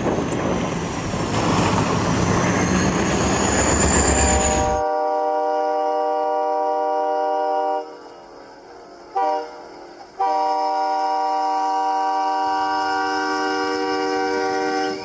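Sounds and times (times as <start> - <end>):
train horn blasts: 4.5 - 8.3, 9.1 - 15.0.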